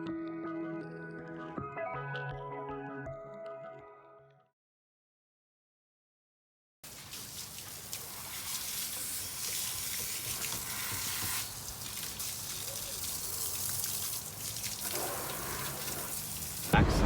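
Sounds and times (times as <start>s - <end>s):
low engine hum: 16.8s - 17.0s.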